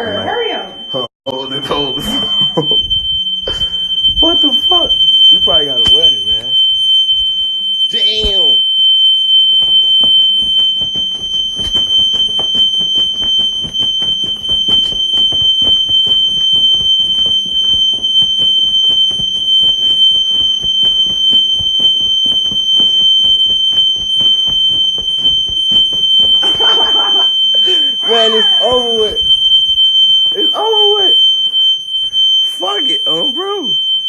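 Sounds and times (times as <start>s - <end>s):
smoke alarm high-pitched tone: 0.0s - 34.0s
irregular clicking and knocking: 2.5s - 28.0s.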